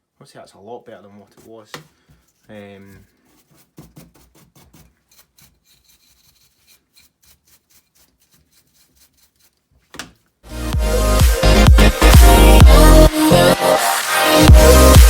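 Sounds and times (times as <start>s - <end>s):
faint rubbing and scraping strokes: 1.2s - 10.0s
music: 10.5s - 15.0s.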